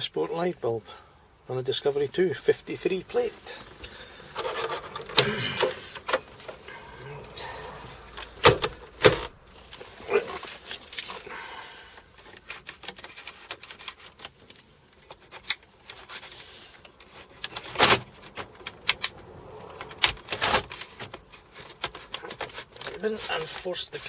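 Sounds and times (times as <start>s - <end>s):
hard objects clicking and knocking: 3.7s - 6.7s, 8.0s - 11.2s.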